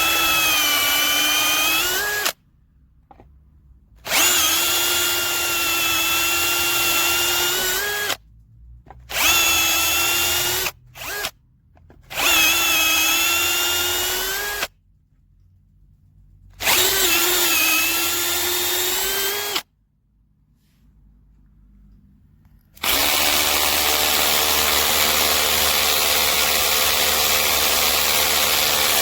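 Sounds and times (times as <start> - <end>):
cordless drill motor whining: 0.0 - 2.4, 4.0 - 8.2, 9.1 - 11.4, 12.1 - 14.7, 16.6 - 19.7, 22.8 - 29.0.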